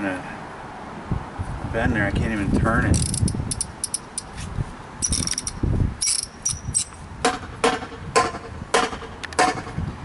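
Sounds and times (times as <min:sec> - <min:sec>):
shock absorber creaking and squeaking: 0:02.9 - 0:07.0.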